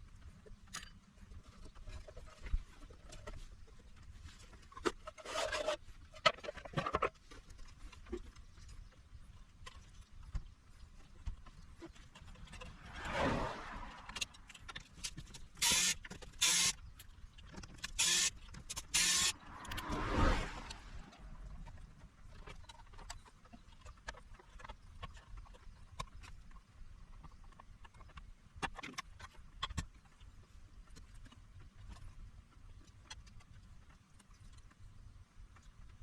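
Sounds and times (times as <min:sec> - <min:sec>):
scraping or rustling: 0:00.9 - 0:26.5.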